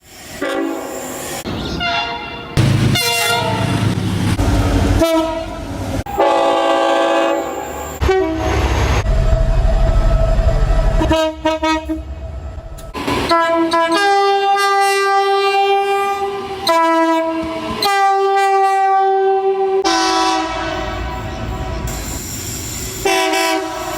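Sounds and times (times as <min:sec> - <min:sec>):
low rumble of passing trains: 0:00.0 - 0:23.9
train horn chord: 0:01.9 - 0:03.9, 0:05.0 - 0:09.0, 0:11.0 - 0:12.1, 0:12.9 - 0:21.8, 0:23.0 - 0:23.9.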